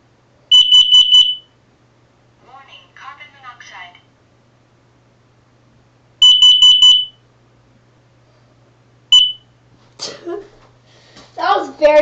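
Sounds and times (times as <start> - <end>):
smoke alarm beeps: 0.5 - 1.6, 6.2 - 7.2, 9.1 - 9.6.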